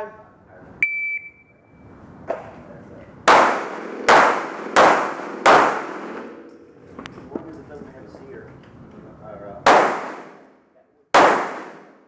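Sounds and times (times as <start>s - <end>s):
shot timer beep: 0.8s - 1.7s
pistol shots echoing: 3.3s - 6.5s, 9.6s - 10.5s, 11.1s - 12.0s.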